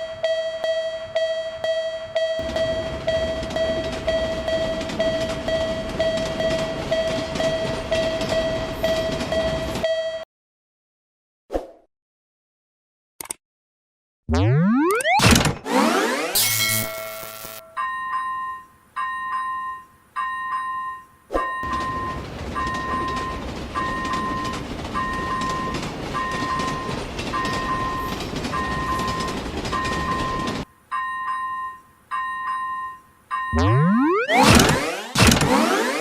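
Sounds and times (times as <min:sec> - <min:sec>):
railroad crossing bell clanging: 0:00.0 - 0:10.2, 0:16.4 - 0:34.2
passing train rumble: 0:00.2 - 0:09.8, 0:21.6 - 0:30.9
cartoon chime: 0:14.4 - 0:18.2, 0:33.5 - 0:36.0.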